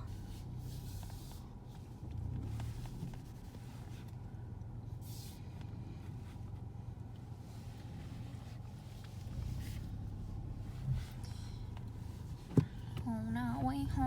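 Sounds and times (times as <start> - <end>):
car road and engine rumble: 0.0 - 14.0.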